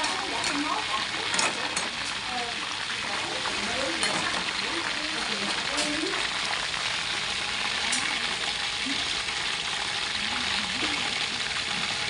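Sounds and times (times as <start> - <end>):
chicken wings frying in oil: 0.0 - 12.0.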